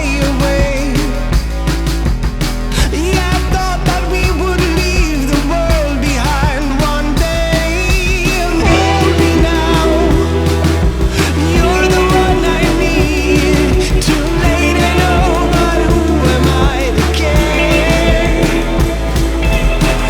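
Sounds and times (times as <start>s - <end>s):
bass line: 0.0s - 20.0s
drums: 0.0s - 20.0s
person singing: 8.5s - 20.0s.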